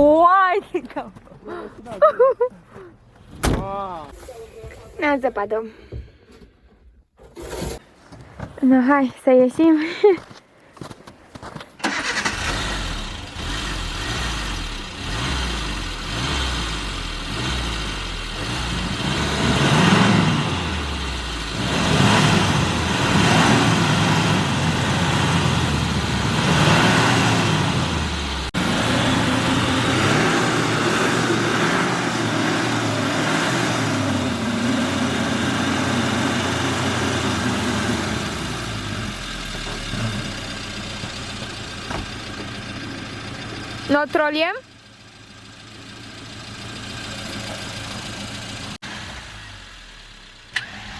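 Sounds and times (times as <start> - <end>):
car engine revving: 11.8 - 50.9.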